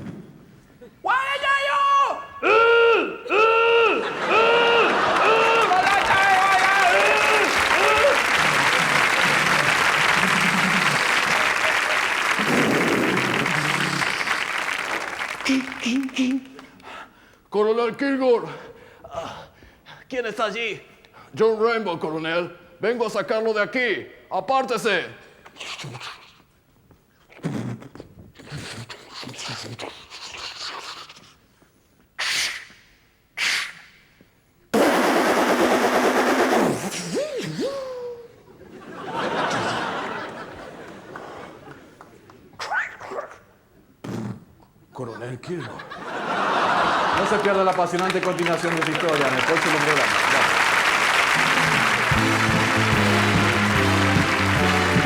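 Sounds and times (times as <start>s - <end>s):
audience applauding: 4.0s - 16.6s, 46.2s - 55.0s
man making mouth sound effects: 8.4s - 11.5s, 12.4s - 14.5s, 15.4s - 16.8s, 25.5s - 26.5s, 27.2s - 31.4s, 35.8s - 38.4s, 42.6s - 44.8s, 51.4s - 53.0s
mouth rumbling noises: 12.3s - 14.6s.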